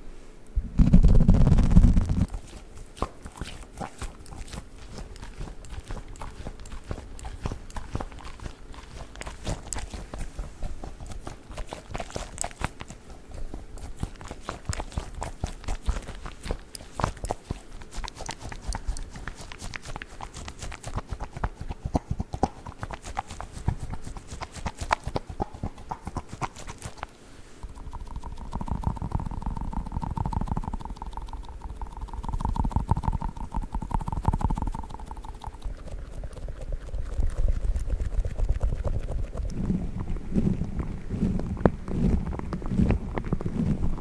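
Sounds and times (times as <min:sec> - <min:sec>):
dog toy squishing: 0:00.6 - 0:44.0
tapping and scratching clicks: 0:00.8 - 0:44.0.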